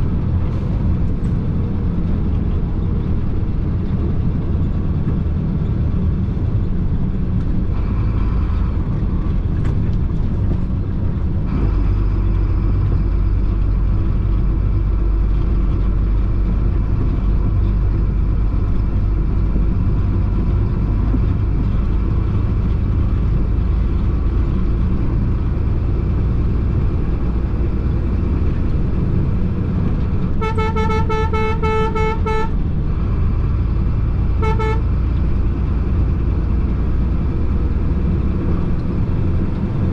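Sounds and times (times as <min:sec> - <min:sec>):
truck diesel engine rumbling: 0:00.0 - 0:39.9
pulsing vehicle horn: 0:30.4 - 0:32.6, 0:34.3 - 0:35.1.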